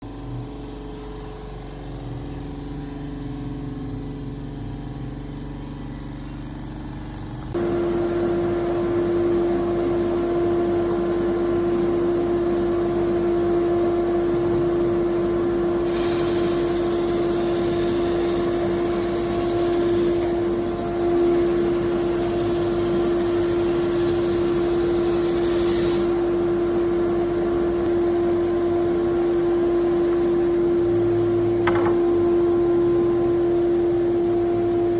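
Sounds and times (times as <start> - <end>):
drum sander motor whining: 5.7 - 34.9
sanding drum hissing on surface: 15.8 - 26.2.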